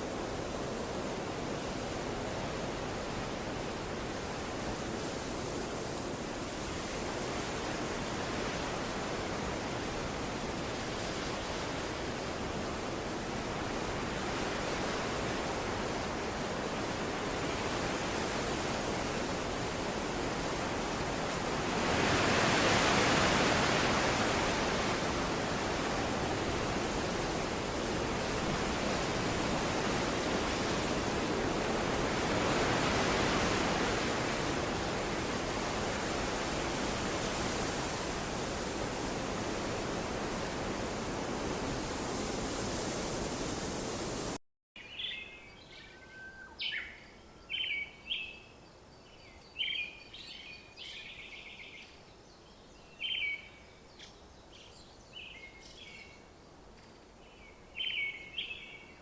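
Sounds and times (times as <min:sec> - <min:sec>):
rushing water: 0:00.0 - 0:44.4.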